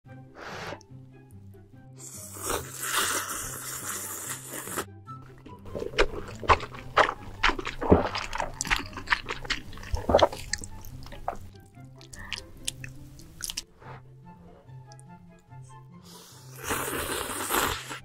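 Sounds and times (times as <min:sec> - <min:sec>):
soft background music: 0:00.1 - 0:18.0
person chewing crunchy food: 0:02.0 - 0:13.7, 0:16.5 - 0:18.0.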